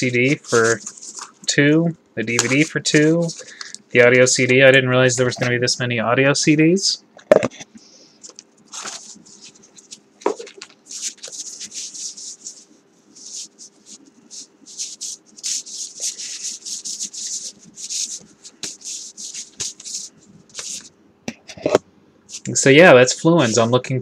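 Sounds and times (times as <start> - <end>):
packaging rustling and scraping: 0.0 - 1.5, 7.5 - 14.1.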